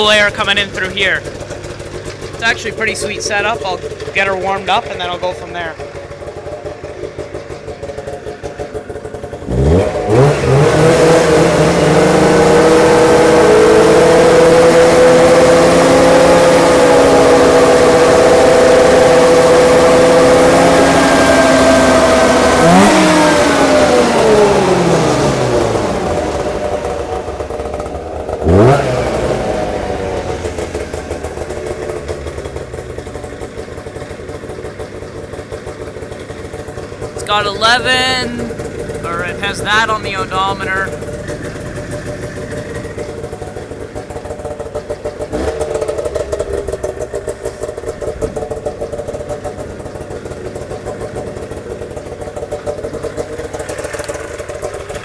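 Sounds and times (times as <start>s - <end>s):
snowmobile engine revving: 0.0s - 1.4s, 2.3s - 5.8s, 9.3s - 32.6s, 37.0s - 52.2s.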